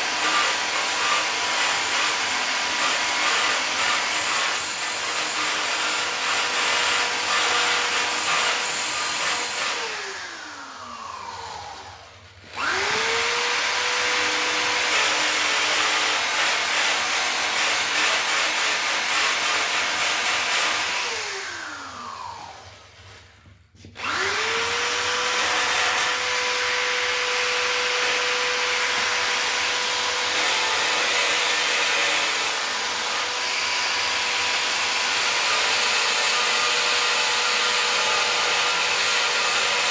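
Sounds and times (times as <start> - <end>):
grinder winding down: 6.9 - 15.3, 24.0 - 32.7.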